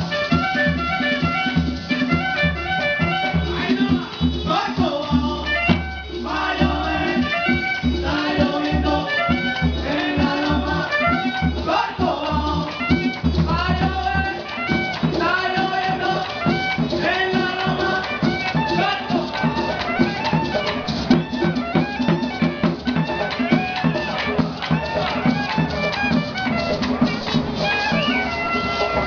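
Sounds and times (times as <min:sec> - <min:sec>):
deep regular drum beats: 0:00.0 - 0:29.0
drums: 0:00.0 - 0:29.0
people singing: 0:03.0 - 0:29.0
melodic line: 0:23.9 - 0:29.0.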